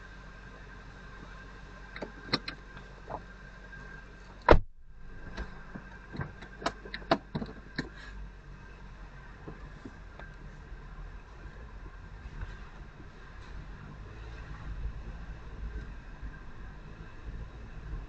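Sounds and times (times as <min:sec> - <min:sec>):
steady background hum: 0:00.0 - 0:18.0
loud thump: 0:04.5 - 0:04.8.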